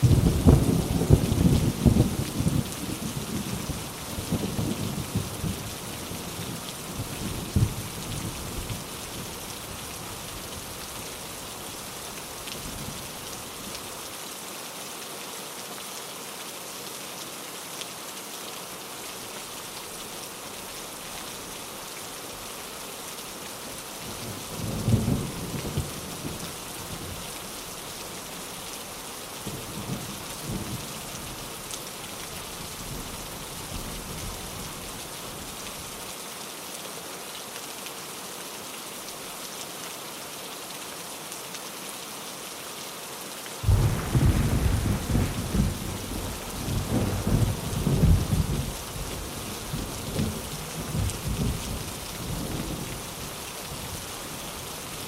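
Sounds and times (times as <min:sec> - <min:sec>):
heavy rain: 0:00.0 - 0:55.0
thunder rumbling: 0:43.6 - 0:52.9.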